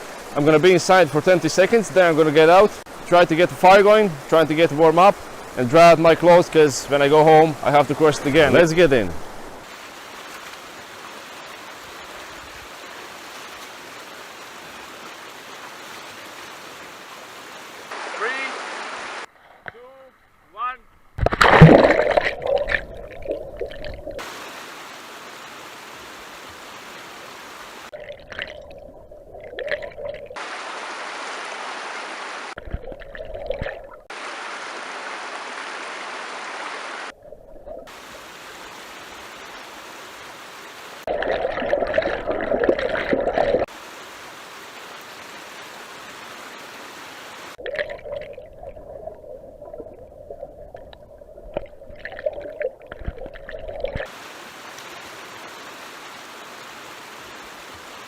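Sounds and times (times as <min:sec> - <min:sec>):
creek water rushing: 0:00.0 - 0:19.3, 0:21.4 - 0:28.0, 0:30.4 - 0:32.7, 0:34.0 - 0:37.1, 0:37.9 - 0:47.8, 0:53.4 - 0:58.0
person splashing in water: 0:21.2 - 0:24.2.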